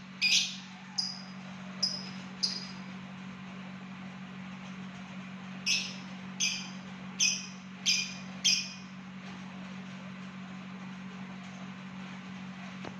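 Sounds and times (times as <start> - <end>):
steady low hum: 0.0 - 12.9
lovebird sharp high calls: 0.2 - 2.8, 5.7 - 8.8.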